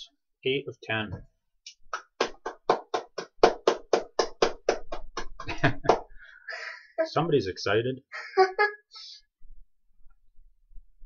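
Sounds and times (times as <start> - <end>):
rapid sharp percussive hits: 1.8 - 6.1.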